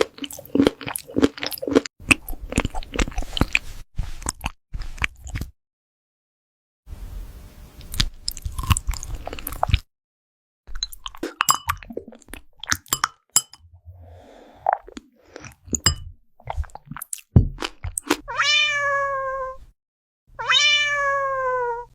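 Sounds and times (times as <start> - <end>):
cat meowing: 18.3 - 19.6, 20.4 - 21.9.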